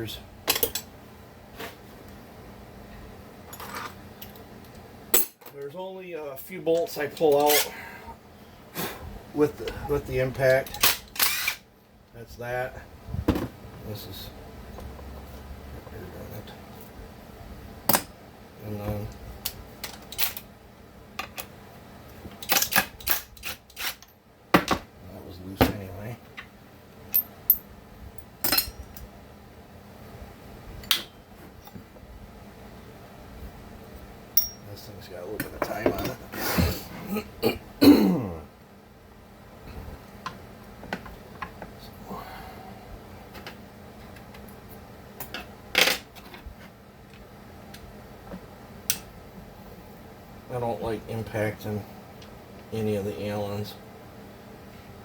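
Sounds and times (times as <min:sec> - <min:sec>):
metal tool clicks and clinks: 0:34.4 - 0:34.7.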